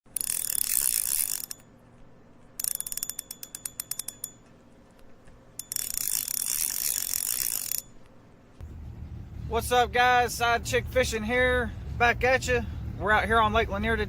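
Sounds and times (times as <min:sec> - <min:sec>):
fishing reel drag ratcheting: 0:00.1 - 0:01.7, 0:02.6 - 0:04.4, 0:05.6 - 0:08.0.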